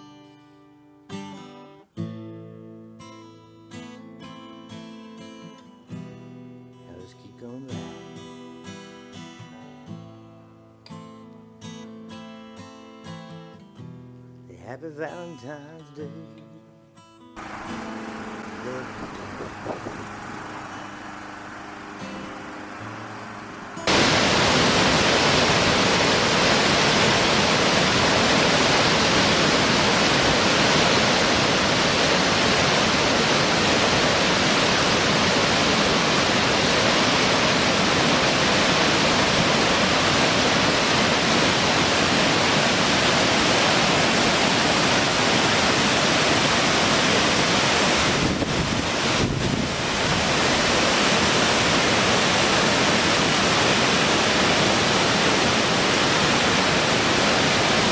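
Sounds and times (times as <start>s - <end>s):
waterfall rushing: 17.4s - 57.9s.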